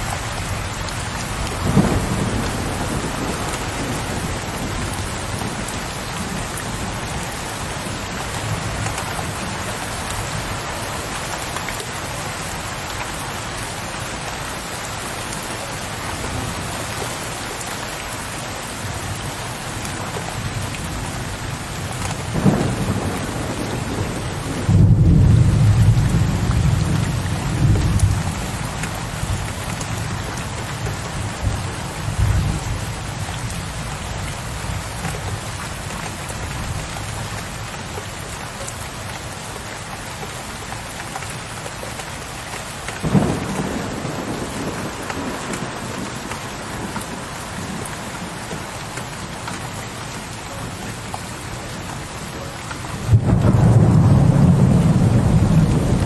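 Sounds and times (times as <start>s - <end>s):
heavy rain: 0.0s - 56.0s
distant thunder rumbling: 1.2s - 7.0s, 22.3s - 28.4s, 43.0s - 47.8s, 53.0s - 56.0s.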